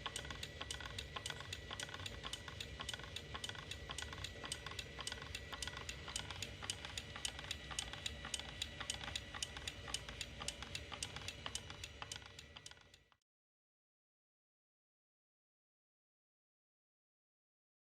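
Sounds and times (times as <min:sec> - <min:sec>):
mechanism ticking rapidly: 0:00.0 - 0:13.2.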